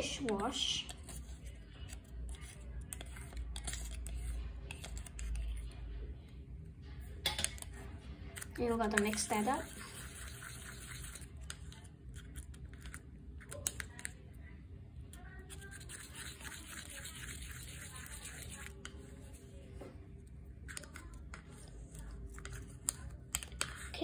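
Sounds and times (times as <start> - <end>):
utensil scraping a container: 8.8 - 12.9, 15.5 - 19.4.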